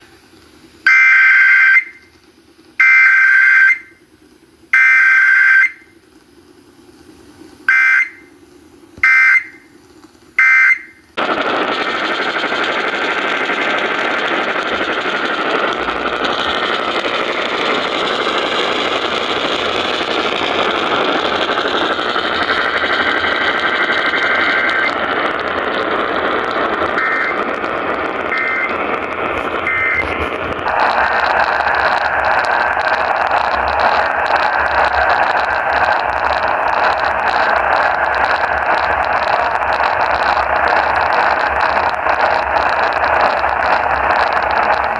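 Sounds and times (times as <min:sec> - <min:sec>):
static hiss: 0:00.0 - 0:44.9
alert data bursts: 0:07.7 - 0:11.2, 0:15.9 - 0:30.0
faint data tones: 0:14.7 - 0:30.1.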